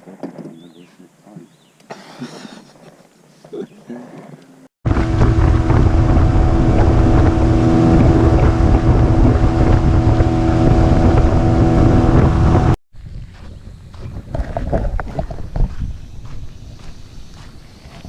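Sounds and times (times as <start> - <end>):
wind buffeting microphone: 4.8 - 18.0
motorboat engine running: 4.9 - 13.2.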